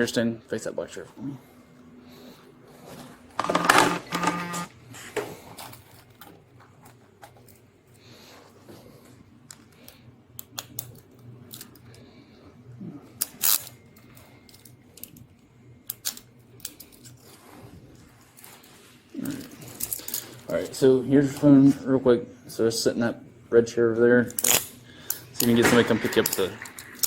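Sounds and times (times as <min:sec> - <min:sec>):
faint low room hum: 0:00.0 - 0:27.0
hard objects clicking and rattling: 0:25.5 - 0:27.0.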